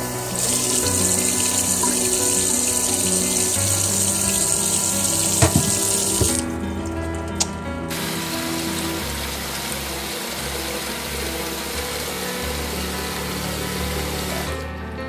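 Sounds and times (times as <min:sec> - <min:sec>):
water running from tap: 0:00.0 - 0:14.6
short knocks: 0:05.4 - 0:06.6.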